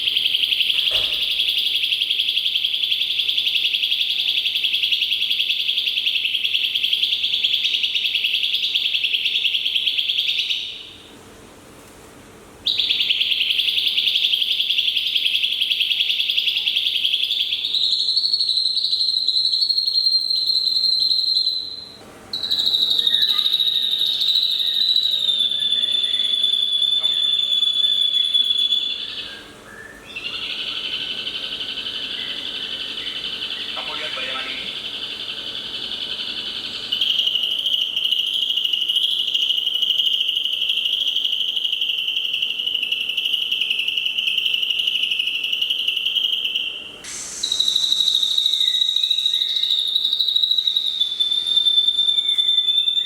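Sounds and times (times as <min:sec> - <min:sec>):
bird high drawn-out whistle: 0:12.7 - 0:34.8, 0:36.2 - 0:53.0
bird buzzy chatter: 0:22.4 - 0:24.3.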